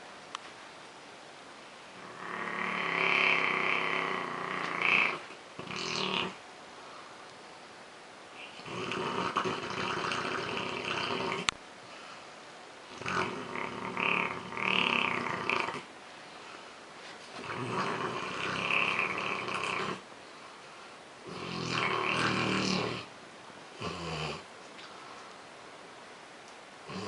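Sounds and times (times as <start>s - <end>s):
dog snoring: 2.0s - 6.4s, 8.4s - 11.5s, 12.9s - 15.9s, 17.4s - 20.0s, 21.2s - 23.1s, 23.8s - 24.5s.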